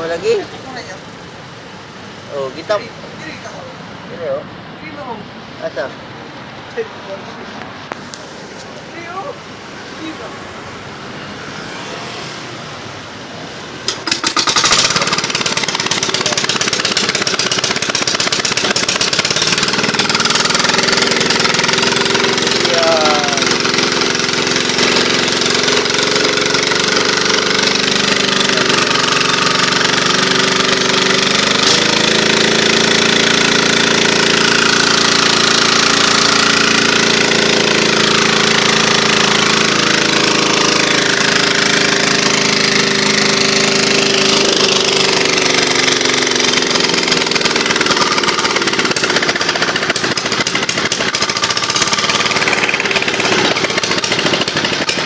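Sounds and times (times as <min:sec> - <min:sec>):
diesel engine clattering: 0:13.8 - 0:55.0.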